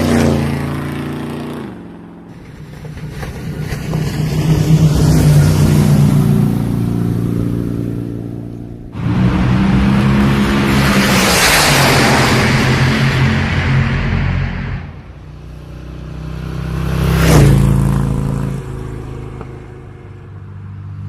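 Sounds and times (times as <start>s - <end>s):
rough loud engine: 0.0s - 20.5s
vehicle engine running: 0.0s - 21.0s.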